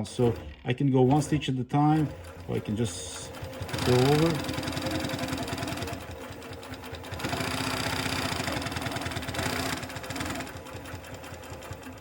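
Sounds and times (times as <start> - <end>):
sewing machine stitching: 0.0 - 12.0.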